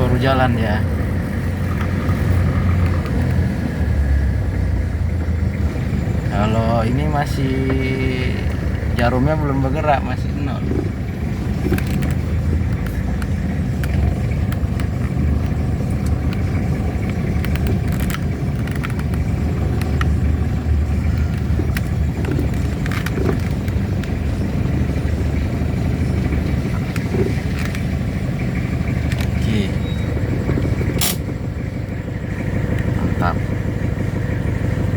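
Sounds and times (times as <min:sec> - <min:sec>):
diesel engine drone in cabin: 0:00.0 - 0:34.9
road noise: 0:00.0 - 0:34.9
light clicks and rattles: 0:09.8 - 0:29.5.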